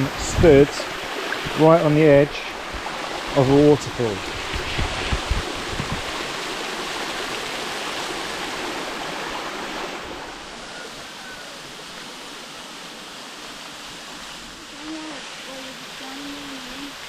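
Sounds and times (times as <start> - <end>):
waterfall roaring: 0.0 - 17.0
low bumps: 2.6 - 6.3.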